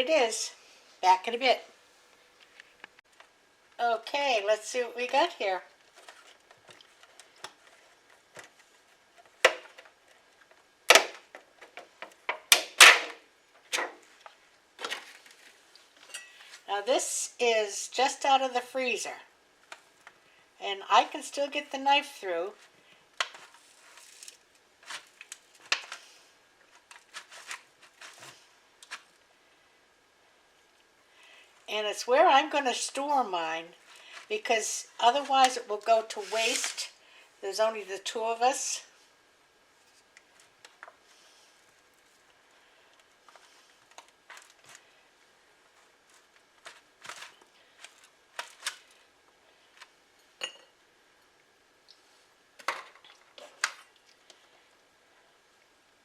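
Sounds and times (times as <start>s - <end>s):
knife scraping frozen pie: 26.8s - 29.1s, 36.1s - 36.8s.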